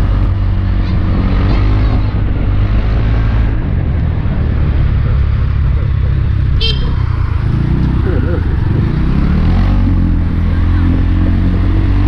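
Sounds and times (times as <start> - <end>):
wind noise: 0.0 - 12.0
motorbike engine running: 4.3 - 11.7.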